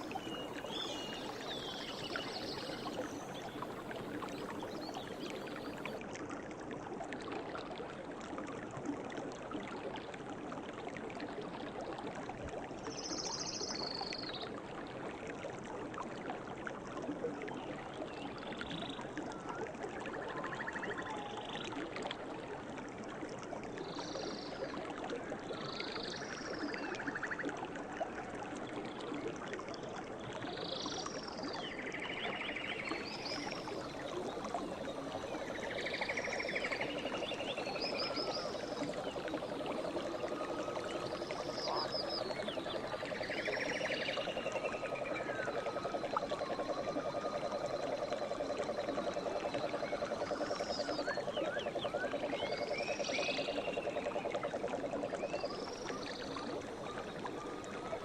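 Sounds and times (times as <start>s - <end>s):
river water flowing: 0.0s - 14.2s, 31.1s - 58.0s
birds calling: 33.8s - 47.3s.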